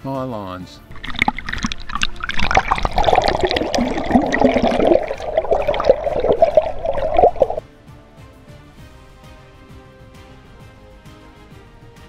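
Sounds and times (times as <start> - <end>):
water splashing and trickling: 0.9 - 7.6.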